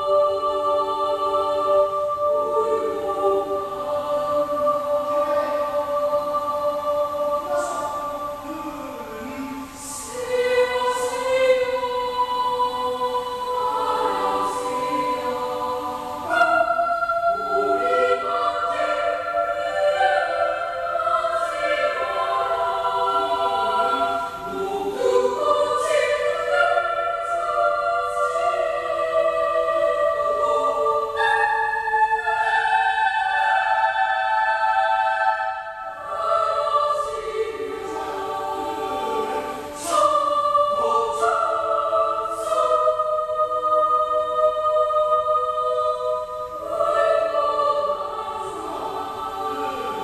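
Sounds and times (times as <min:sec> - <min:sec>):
children's choir singing: 0:00.0 - 0:50.0.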